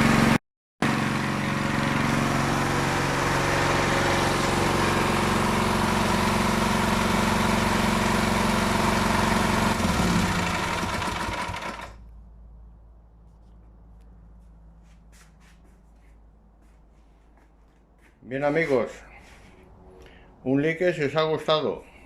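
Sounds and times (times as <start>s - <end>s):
generator engine running: 0.0s - 12.4s.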